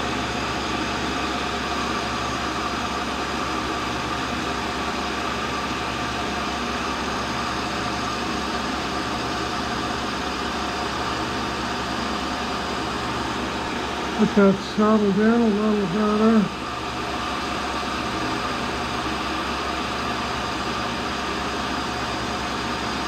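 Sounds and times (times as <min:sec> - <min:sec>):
grinder hum and whir: 0:00.0 - 0:23.0.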